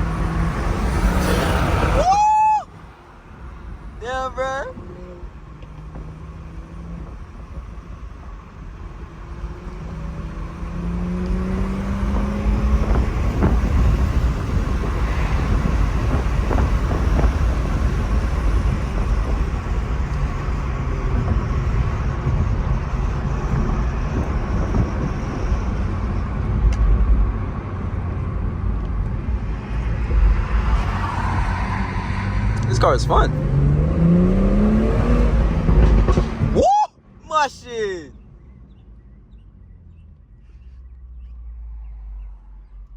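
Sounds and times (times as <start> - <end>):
car engine accelerating: 0.0 - 36.6, 37.6 - 42.9
road noise: 0.0 - 42.9.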